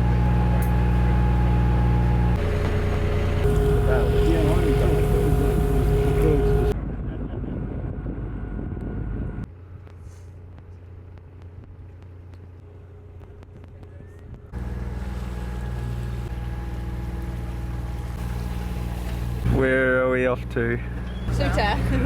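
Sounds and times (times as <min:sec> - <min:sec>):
loud rumbling: 0:00.0 - 0:09.8
boat engine droning: 0:00.0 - 0:22.0.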